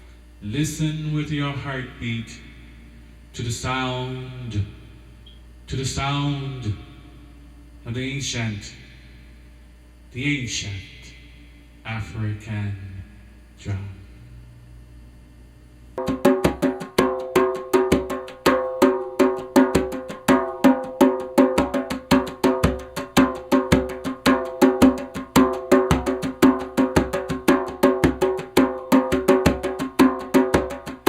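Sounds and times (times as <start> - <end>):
hand drum fast rhythm: 16.0 - 31.0.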